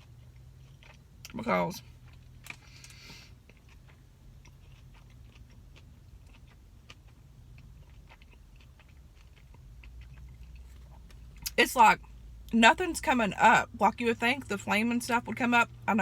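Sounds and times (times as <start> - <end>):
person chewing crunchy food: 0.0 - 11.6.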